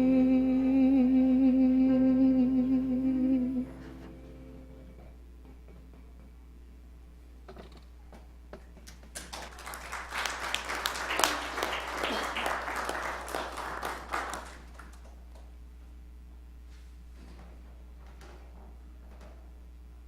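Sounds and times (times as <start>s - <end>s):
congregation applauding: 9.1s - 15.4s.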